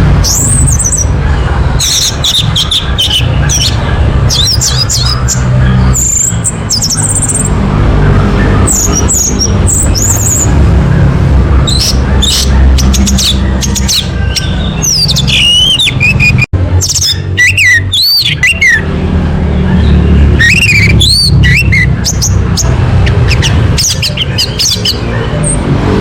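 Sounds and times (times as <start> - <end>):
thrush whistled song: 11.6 - 18.9, 19.8 - 22.4.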